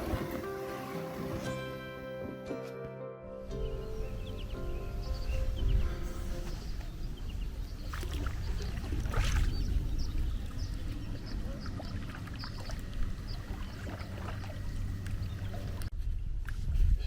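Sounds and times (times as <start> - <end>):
paddle splashing water: 0.0 - 2.5, 5.1 - 15.9
steady low rumble: 3.5 - 16.8.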